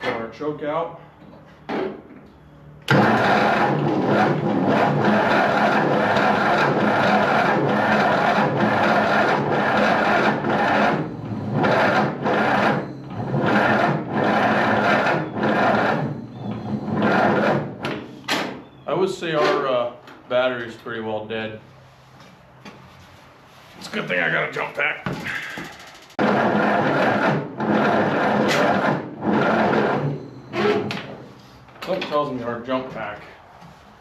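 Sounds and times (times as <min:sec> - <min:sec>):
tractor starter cranking engine: 0:02.9 - 0:17.9, 0:25.2 - 0:31.2.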